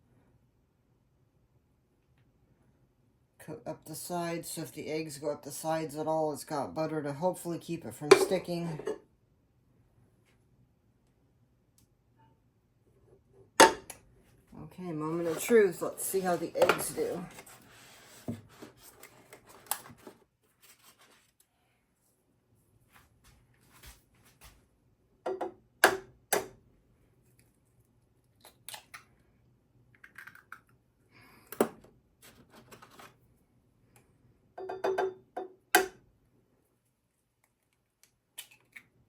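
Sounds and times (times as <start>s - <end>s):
eggs being cracked: 30.0s - 30.8s.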